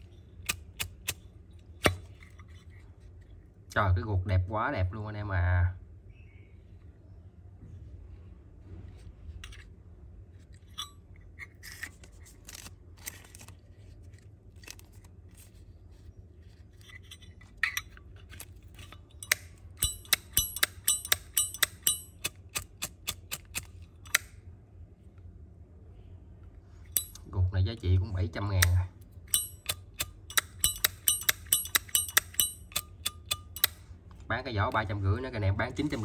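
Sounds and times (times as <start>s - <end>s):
sharp bright metal clicks: 0.0s - 1.2s, 18.8s - 24.4s, 26.9s - 27.3s, 28.4s - 33.9s
lighter metallic scrapes and clicks: 16.8s - 24.3s, 26.8s - 27.2s, 28.6s - 33.9s.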